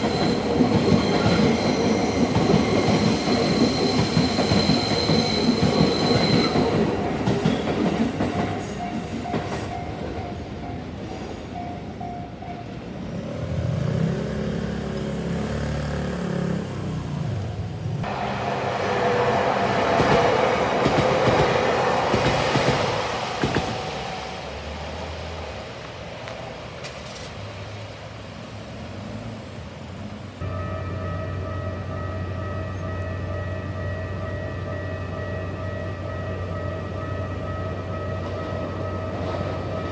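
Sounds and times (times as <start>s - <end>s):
train wheels rushing on rails: 0.0s - 11.6s, 13.0s - 30.5s.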